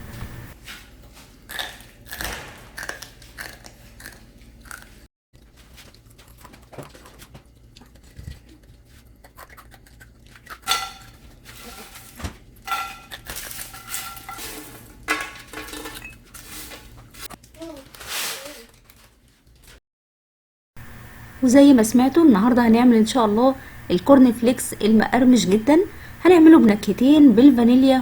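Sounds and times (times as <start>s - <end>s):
corn flakes crunching when chewed: 1.5s - 12.1s.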